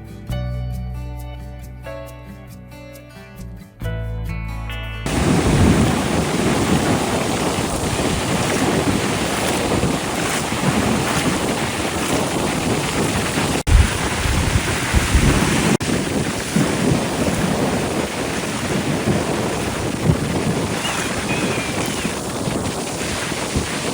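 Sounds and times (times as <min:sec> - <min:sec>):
ocean surf breaking: 0:05.1 - 0:23.9
wind buffeting microphone: 0:05.1 - 0:23.9.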